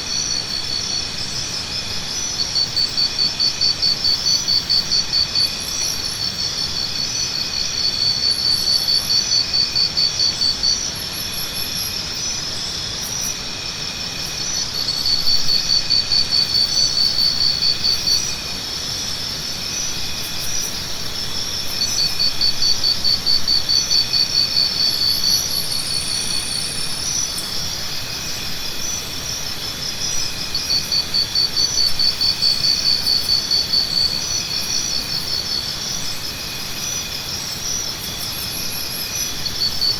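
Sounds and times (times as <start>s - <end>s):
high insect drone: 0.0s - 39.9s
insects trilling: 0.0s - 39.9s.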